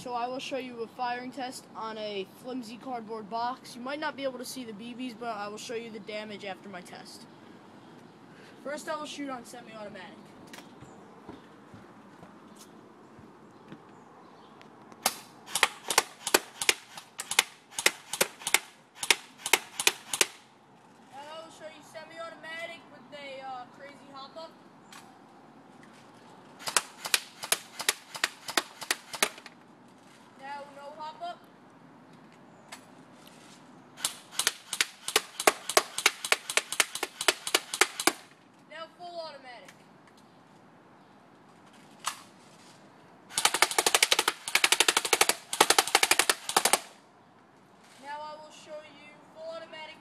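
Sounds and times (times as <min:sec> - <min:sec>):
airsoft gun firing: 0:15.0 - 0:20.5, 0:26.6 - 0:29.6, 0:34.0 - 0:38.3, 0:43.3 - 0:47.0.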